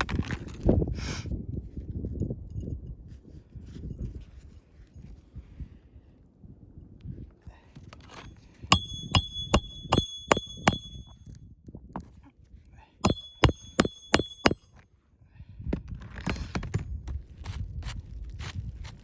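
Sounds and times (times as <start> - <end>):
hammer driving nails: 8.7 - 11.1, 13.0 - 14.6.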